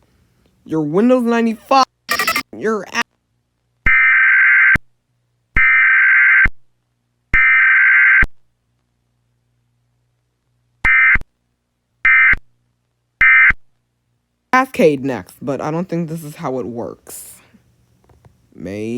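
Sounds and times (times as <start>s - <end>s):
harsh digital data bursts: 2.1s - 2.4s.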